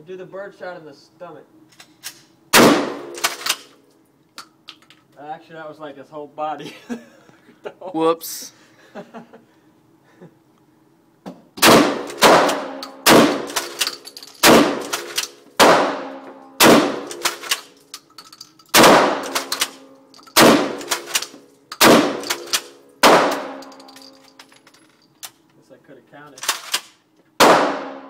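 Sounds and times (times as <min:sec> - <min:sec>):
shotgun shots with ringing echo: 0:02.5 - 0:03.4, 0:11.6 - 0:17.6, 0:18.7 - 0:23.9, 0:27.4 - 0:28.0.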